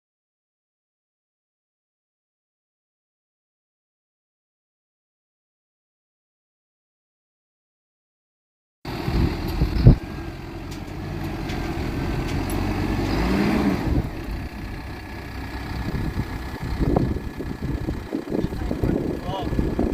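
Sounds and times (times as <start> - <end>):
diesel engine under load: 8.9 - 19.9.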